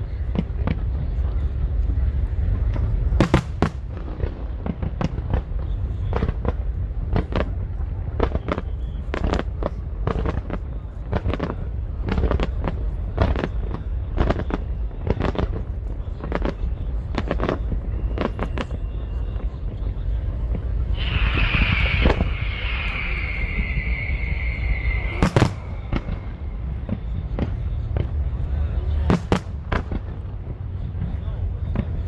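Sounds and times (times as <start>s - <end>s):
continuous low rumble: 0.0s - 32.0s
fireworks bangs: 2.9s - 10.6s, 20.5s - 31.1s.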